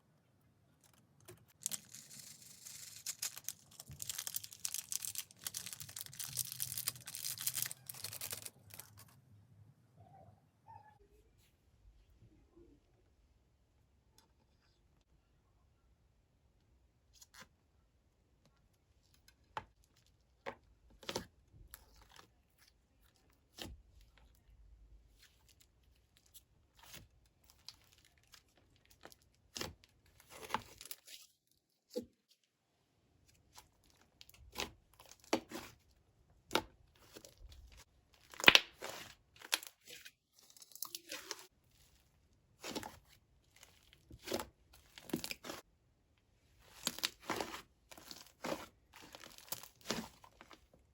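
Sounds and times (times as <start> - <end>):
slime crackling and popping: 1.5 - 8.9, 38.2 - 39.9.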